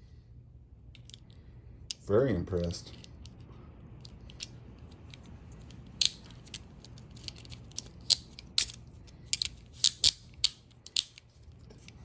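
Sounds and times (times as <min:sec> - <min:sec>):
metal handcuffs clicking and clinking: 0:04.0 - 0:12.0.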